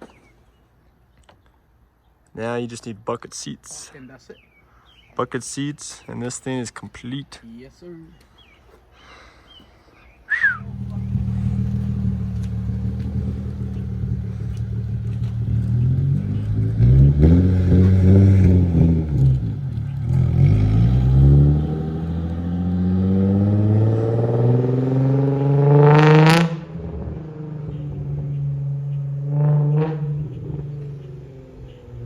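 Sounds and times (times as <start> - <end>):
car engine revving: 10.3 - 32.0.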